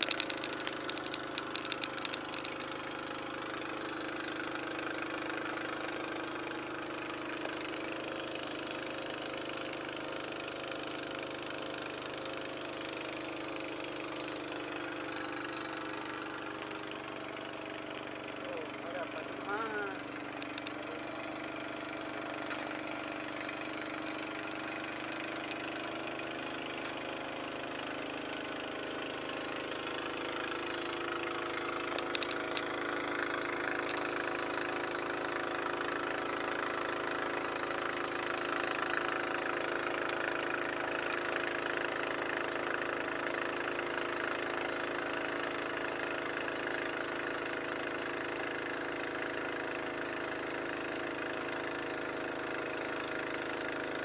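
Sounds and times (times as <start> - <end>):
sharp clicks: 0.0 - 2.9, 15.5 - 21.2, 25.4 - 25.8, 31.8 - 32.8
small engine running: 0.0 - 54.0.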